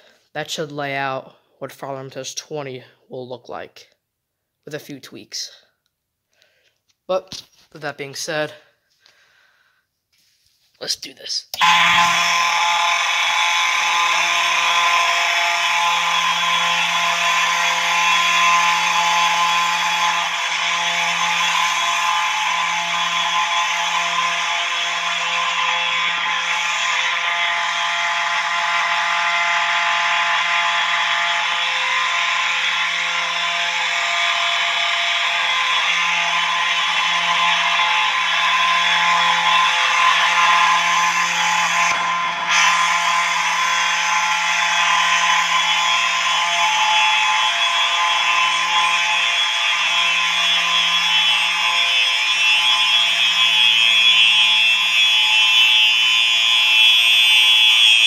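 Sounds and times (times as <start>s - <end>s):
fire alarm horns buzzing: 11.6s - 58.0s.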